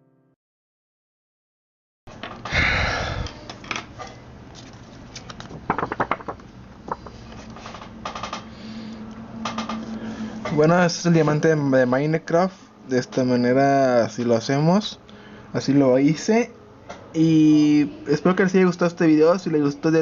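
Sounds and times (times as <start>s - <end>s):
low steady hum: 2.1s - 20.0s.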